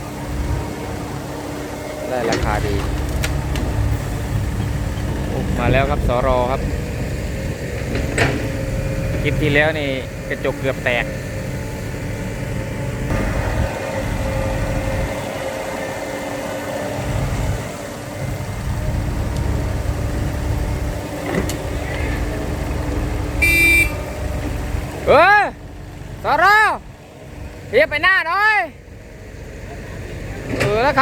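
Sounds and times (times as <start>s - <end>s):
diesel truck engine rumbling: 0.0s - 31.0s
short horn toot: 23.4s - 24.0s.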